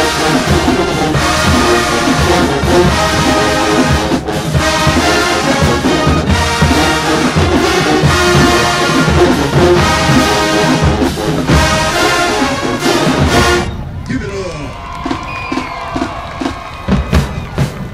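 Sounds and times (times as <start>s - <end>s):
brass band playing a tune: 0.0s - 14.0s.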